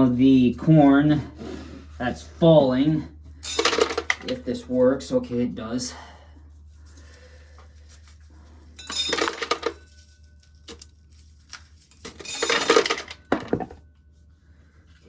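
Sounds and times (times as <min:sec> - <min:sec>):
corn kernels clattering into container: 0:03.4 - 0:04.4, 0:08.8 - 0:09.8, 0:11.5 - 0:13.6.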